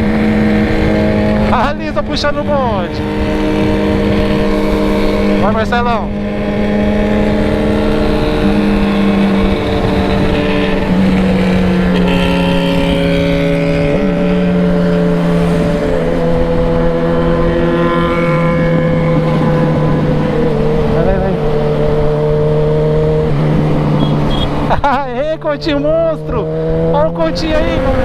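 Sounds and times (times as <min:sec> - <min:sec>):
motorcycle engine cruising: 0:00.0 - 0:28.0
wind buffeting microphone: 0:00.0 - 0:28.0.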